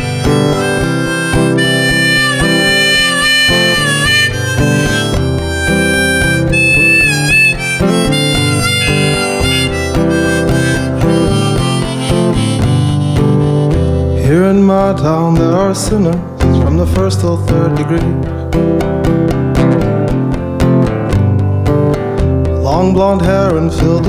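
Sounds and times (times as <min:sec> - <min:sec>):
harmonica solo with pitch bends: 0:00.0 - 0:14.5
strummed acoustic guitar: 0:00.0 - 0:24.0.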